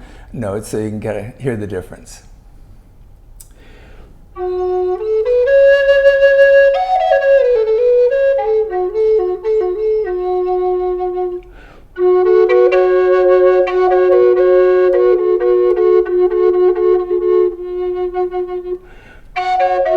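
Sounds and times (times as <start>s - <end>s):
wooden flute playing slow melody: 4.3s - 19.9s.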